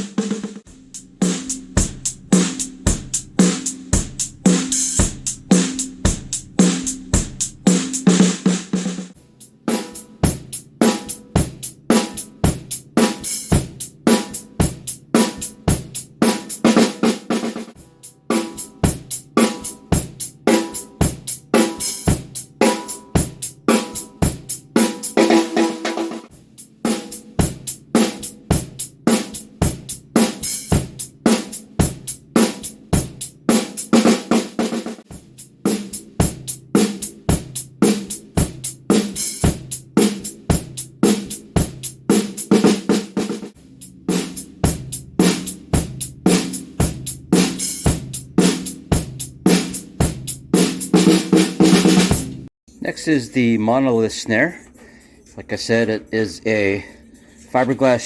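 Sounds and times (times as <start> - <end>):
bass drum: 0.0 - 8.8, 43.5 - 52.5
snare drum: 0.0 - 52.5
hi-hat or cymbal strokes: 0.7 - 8.0, 9.2 - 52.5.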